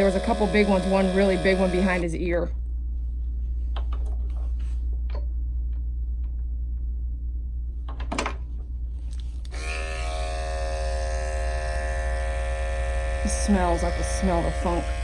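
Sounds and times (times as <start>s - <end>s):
electric clipper buzzing: 0.0s - 2.1s, 9.4s - 15.0s.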